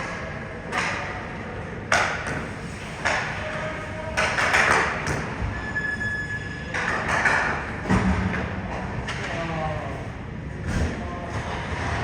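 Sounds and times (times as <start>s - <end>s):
steady background hum: 0.0s - 12.0s
sharp knocks echoing in hall: 6.8s - 9.7s.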